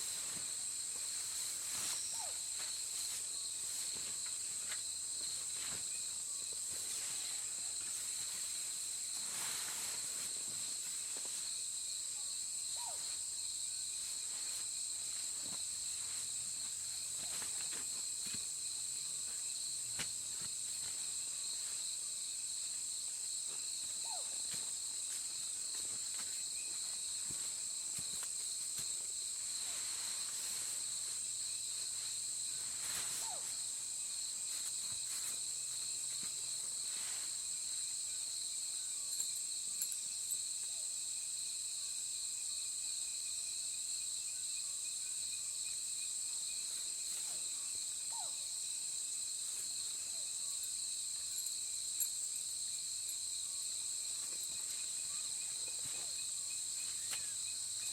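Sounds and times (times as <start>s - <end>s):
insects trilling: 0.0s - 57.9s.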